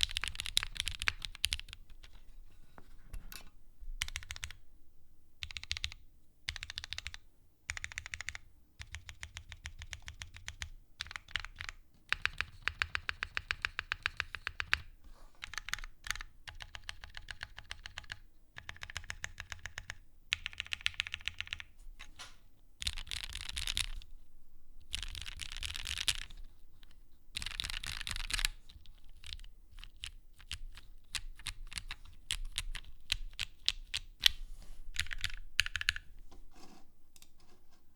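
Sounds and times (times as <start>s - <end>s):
typing on mechanical keyboard: 0.0s - 2.2s, 4.0s - 4.6s, 5.4s - 21.7s, 22.8s - 24.0s, 24.9s - 26.4s, 27.4s - 34.4s, 35.0s - 36.1s.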